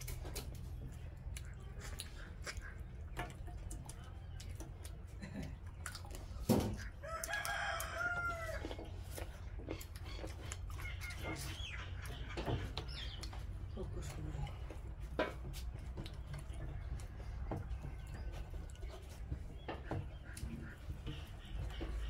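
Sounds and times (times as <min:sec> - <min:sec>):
rooster crowing: 0:07.0 - 0:08.8.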